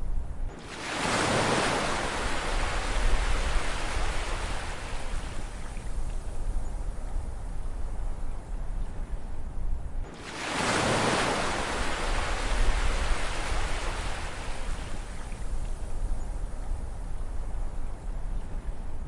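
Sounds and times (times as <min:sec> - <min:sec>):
ocean wave breaking: 0:00.6 - 0:05.6, 0:10.1 - 0:15.1.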